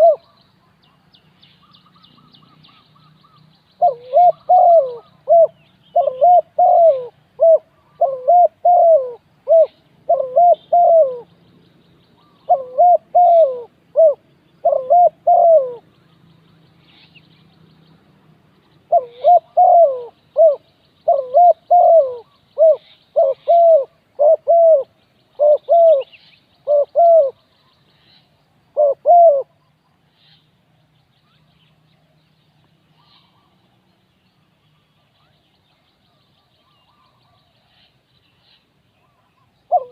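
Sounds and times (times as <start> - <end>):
dove cooing: 0.0 - 0.4, 2.2 - 11.3, 12.2 - 15.8, 18.8 - 27.4, 28.8 - 29.6, 39.0 - 39.9
small birds chirping: 0.0 - 39.9.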